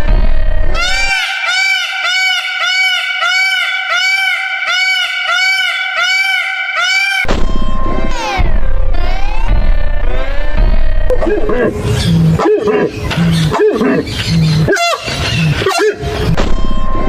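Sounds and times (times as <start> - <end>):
heavy bass: 0.0 - 1.2, 7.3 - 17.0
high bending pitched note: 0.0 - 12.0
phonk music: 0.7 - 16.2.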